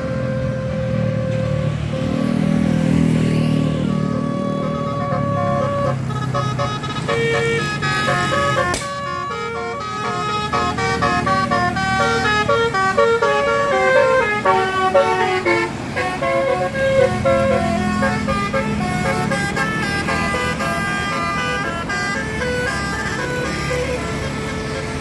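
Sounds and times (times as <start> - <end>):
bus engine hum: 0.0 - 25.0
multi-tone air horn tune: 3.8 - 25.0.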